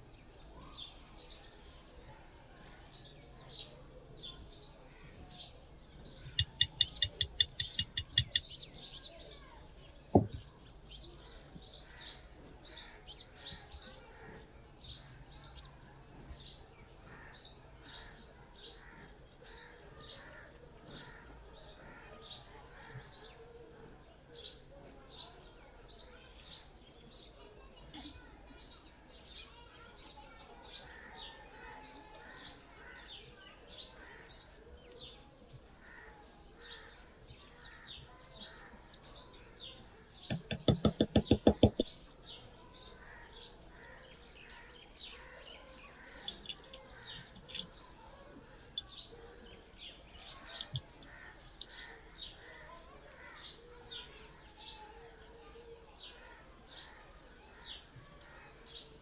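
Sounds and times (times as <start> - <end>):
small bird chirping: 4.3 - 12.9, 37.4 - 43.9, 44.6 - 52.4
run of sharp clicks: 6.4 - 8.5, 40.3 - 42.0.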